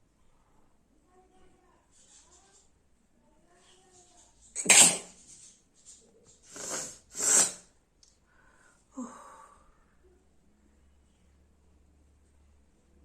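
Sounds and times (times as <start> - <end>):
person sneezing: 4.6 - 5.1, 6.5 - 7.6
forceful nasal bursts: 4.6 - 5.2, 6.5 - 7.7
short snort: 6.4 - 7.7.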